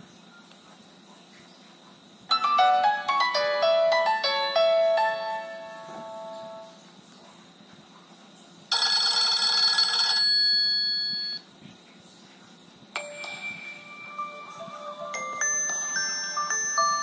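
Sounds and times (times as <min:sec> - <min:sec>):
electronic tone ringtone: 0:02.3 - 0:06.7, 0:08.7 - 0:11.4, 0:13.0 - 0:17.0
telephone bell ringtone: 0:08.7 - 0:11.4, 0:13.0 - 0:17.0.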